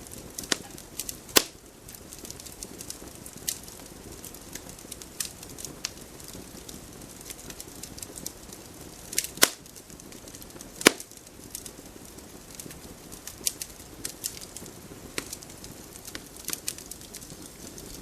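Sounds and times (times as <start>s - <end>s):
campfire flames rustling: 0.0s - 18.0s
fire crackling: 0.0s - 18.0s
loud pops of burning wood: 0.0s - 18.0s.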